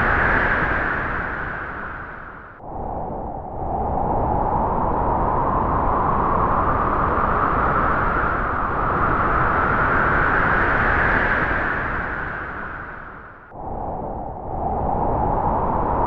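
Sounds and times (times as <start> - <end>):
wind blowing hard with whistling: 0.0 - 16.0.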